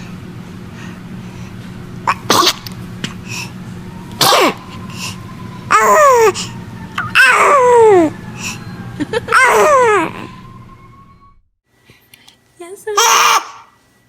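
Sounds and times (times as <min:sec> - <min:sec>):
baby sneezing: 0:02.1 - 0:02.7, 0:04.2 - 0:04.6, 0:13.0 - 0:13.7.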